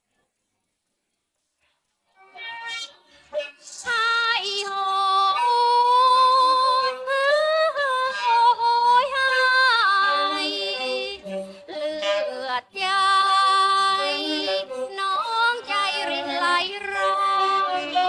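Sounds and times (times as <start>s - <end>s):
woman singing: 3.8s - 18.0s.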